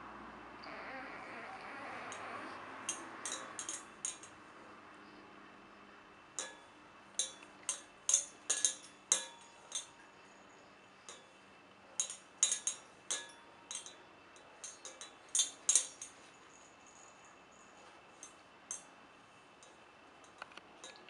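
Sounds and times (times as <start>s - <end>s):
metal bowl clinking: 2.9s - 4.3s, 12.0s - 14.0s.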